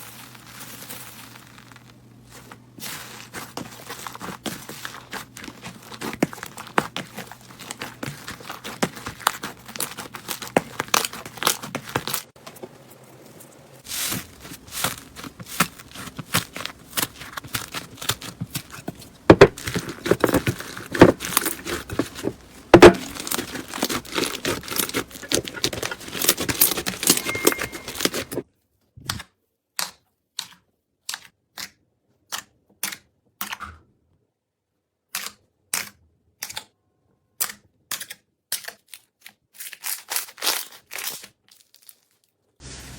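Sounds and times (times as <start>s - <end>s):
crunchy slime crackling and popping: 0.0s - 12.4s, 13.8s - 28.4s, 38.6s - 42.4s.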